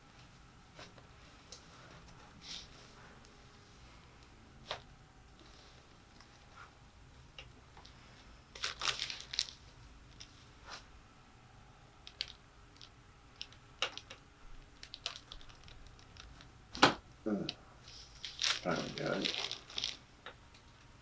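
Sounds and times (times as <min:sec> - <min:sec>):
soft rustling and crinkling: 0:07.6 - 0:10.9, 0:12.1 - 0:16.5, 0:17.8 - 0:20.8.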